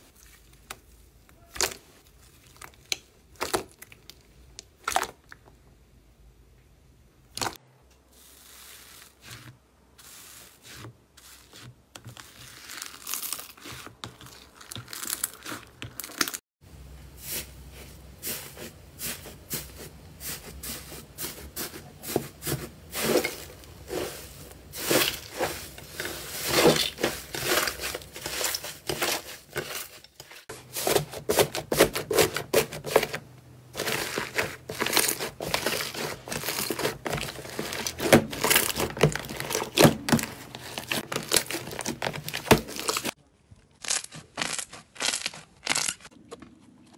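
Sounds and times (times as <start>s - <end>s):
slime crackling and popping: 43.8s - 46.1s.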